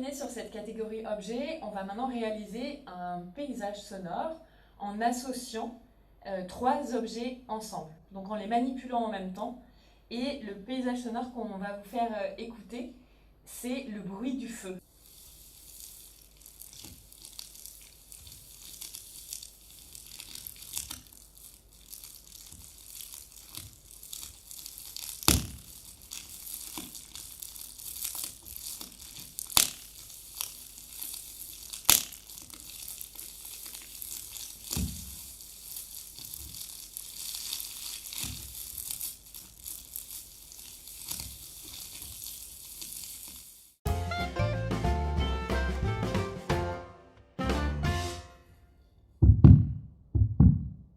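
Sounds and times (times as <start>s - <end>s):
crinkling fire crackle: 14.8s - 43.8s.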